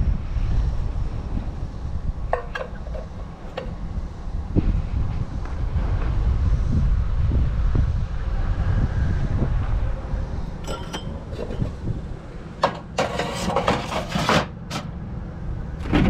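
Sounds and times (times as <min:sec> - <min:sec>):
wind rumble on microphone: 0:00.0 - 0:14.0, 0:15.0 - 0:16.0
metallic clink: 0:10.6 - 0:11.7
scrap metal rattling and clattering: 0:10.6 - 0:11.9, 0:12.6 - 0:14.9.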